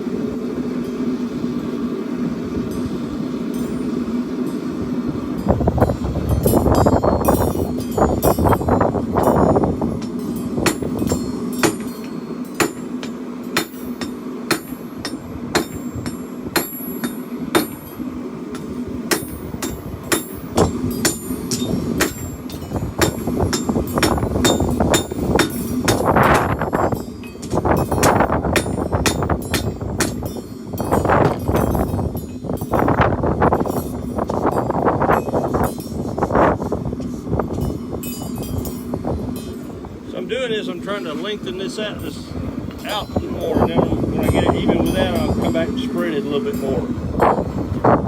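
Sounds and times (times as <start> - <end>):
steady low hum: 0.0 - 48.0
hammer striking steel on anvil: 6.4 - 33.0.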